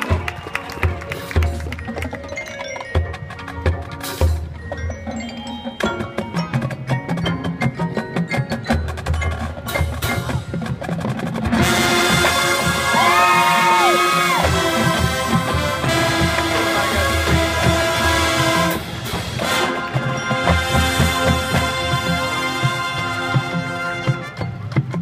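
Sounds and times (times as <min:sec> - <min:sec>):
bell and wood block notes: 0:01.0 - 0:12.5, 0:14.6 - 0:25.0
mallet keyboard notes: 0:01.2 - 0:13.1, 0:14.5 - 0:25.0
marching band sustained chords: 0:08.7 - 0:25.0.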